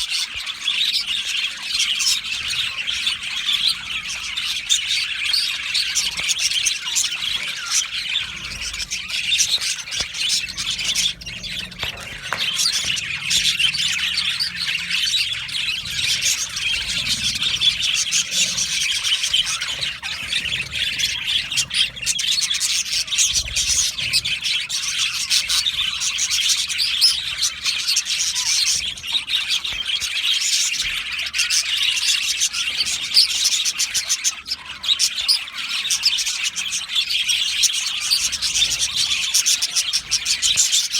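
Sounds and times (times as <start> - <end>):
budgerigars chattering and chirping: 0.0 - 40.9.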